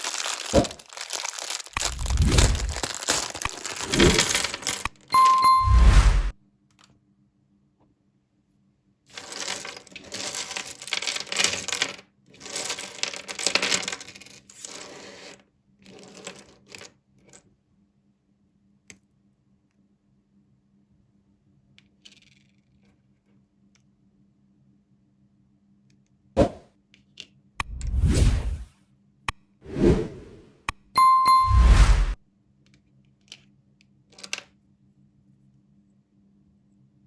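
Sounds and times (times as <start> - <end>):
packaging rustling and rattling: 0.0 - 5.1, 9.1 - 14.6.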